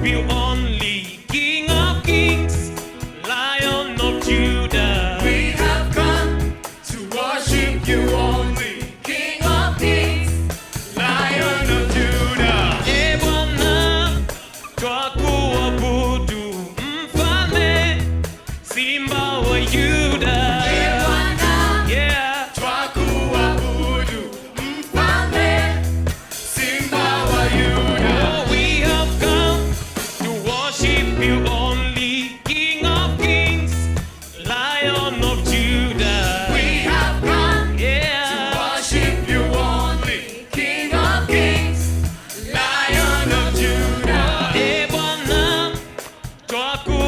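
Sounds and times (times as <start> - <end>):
band with sustained bass: 0.0 - 0.9, 1.7 - 2.9, 3.7 - 6.7, 7.5 - 8.7, 9.4 - 14.4, 15.2 - 16.4, 17.1 - 18.5, 19.2 - 22.2, 23.0 - 24.2, 24.9 - 30.2, 30.8 - 32.0, 32.8 - 34.2, 34.9 - 38.2, 38.9 - 40.1, 40.9 - 45.9
voices singing: 0.0 - 33.6, 34.4 - 47.0.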